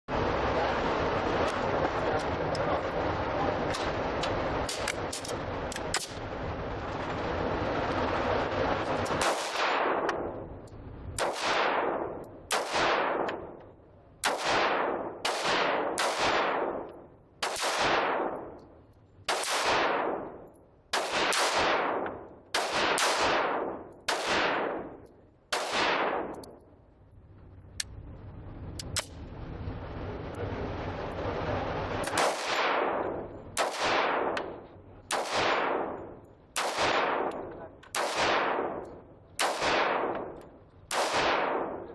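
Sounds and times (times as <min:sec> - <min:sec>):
steady rushing noise: 0:00.1 - 0:17.0, 0:17.6 - 0:41.9
pistol shots echoing: 0:09.0 - 0:10.6, 0:11.2 - 0:18.7, 0:19.3 - 0:26.6, 0:32.0 - 0:41.9.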